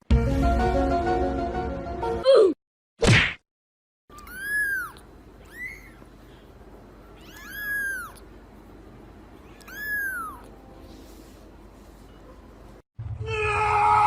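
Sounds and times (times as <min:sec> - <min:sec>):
cat meowing: 0:04.1 - 0:06.0, 0:07.1 - 0:08.2, 0:09.4 - 0:10.5.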